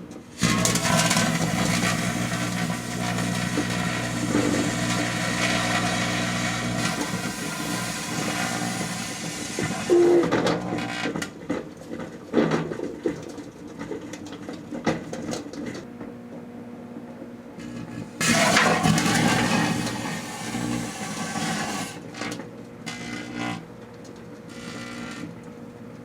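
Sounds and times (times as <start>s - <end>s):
microwave oven humming: 0.0s - 11.4s, 15.8s - 26.0s
fireworks hissing and crackling: 0.5s - 9.9s.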